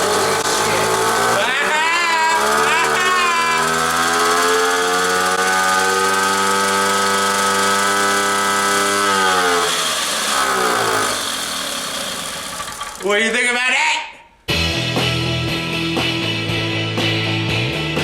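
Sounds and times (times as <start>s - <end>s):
moped engine revving: 0.0s - 13.5s.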